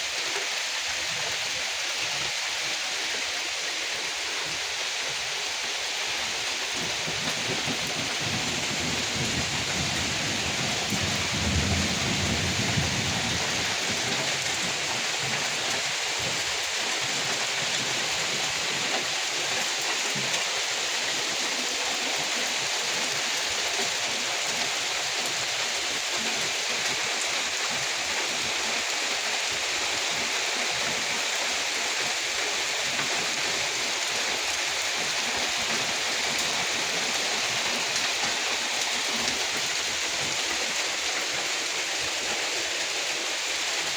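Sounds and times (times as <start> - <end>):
heavy rain falling: 0.0 - 43.9
thunder rumble: 6.8 - 14.1.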